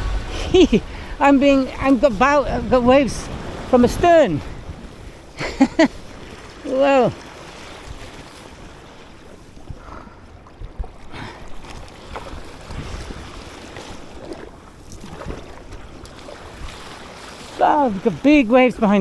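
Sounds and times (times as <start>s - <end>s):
sea water sloshing and splashing: 0.0s - 19.0s
wind buffeting microphone: 0.0s - 19.0s
splashes against kayak hull: 10.5s - 18.4s.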